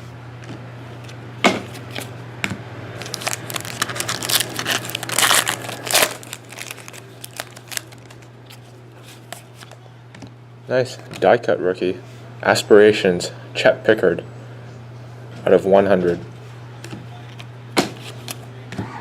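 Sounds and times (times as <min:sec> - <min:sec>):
foil wrapper tearing and crinkling: 0:03.0 - 0:09.8.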